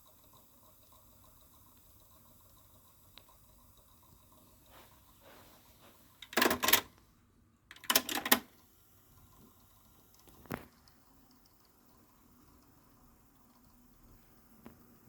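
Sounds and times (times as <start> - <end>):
cassette deck mechanism clicking: 6.2 - 7.0, 7.7 - 8.5.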